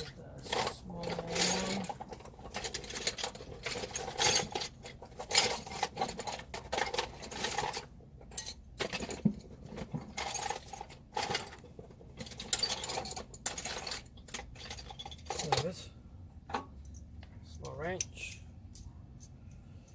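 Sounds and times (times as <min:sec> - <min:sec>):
metal tools clinking: 0:00.0 - 0:15.9.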